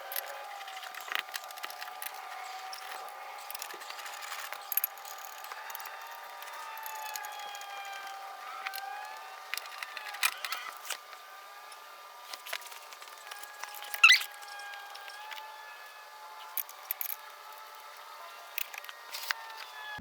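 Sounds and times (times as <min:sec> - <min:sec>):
tool clicking on screws: 0:00.0 - 0:11.0.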